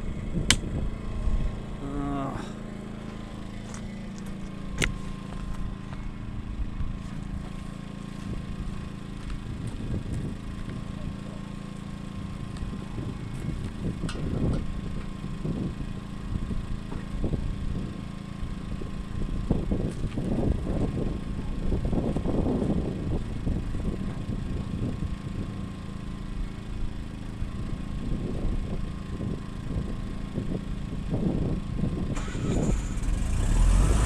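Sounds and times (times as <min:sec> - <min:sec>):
portable generator engine running: 0:00.0 - 0:34.0.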